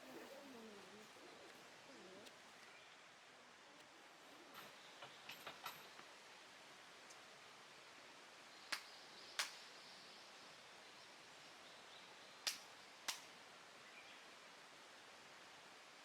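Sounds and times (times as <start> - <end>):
sharp hand claps: 8.7 - 9.7, 12.4 - 13.3.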